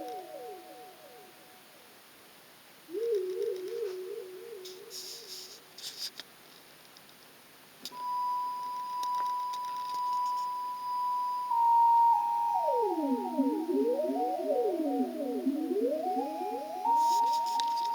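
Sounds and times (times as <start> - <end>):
sweeping synthesizer tones: 0.0 - 1.5, 8.0 - 17.9
high pure synthesizer tone: 10.2 - 17.9
warbling synthesizer tone: 11.5 - 17.9.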